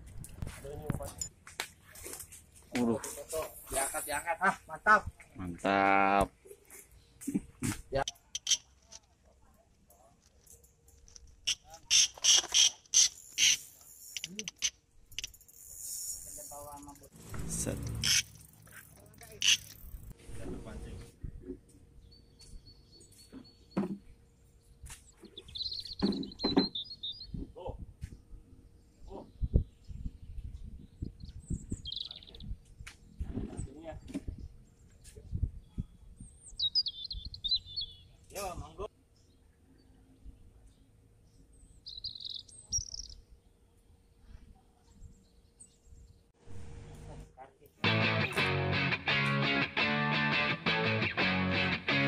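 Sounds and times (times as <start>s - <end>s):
bird calling and chirping: 8.0s - 8.9s, 11.4s - 16.1s, 17.2s - 20.1s, 25.1s - 27.5s, 31.0s - 32.5s, 35.8s - 38.2s, 41.6s - 43.3s
bird chirping: 8.0s - 9.0s, 22.0s - 27.6s, 28.6s - 32.6s, 34.4s - 38.3s, 39.1s - 47.2s.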